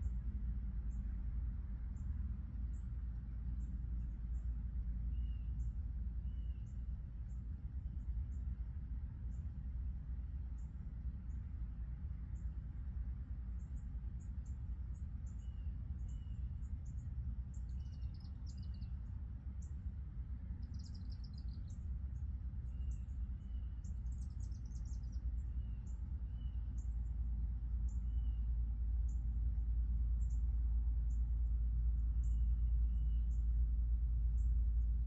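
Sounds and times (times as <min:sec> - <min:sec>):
steady low rumble: 0:00.0 - 0:35.0
small birds chirping: 0:14.5 - 0:19.0, 0:20.6 - 0:21.8, 0:22.6 - 0:27.0.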